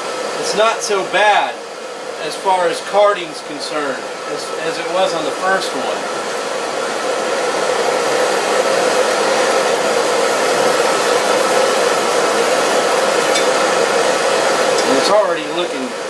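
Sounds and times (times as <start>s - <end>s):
electric blower whirring: 5.4s - 15.2s.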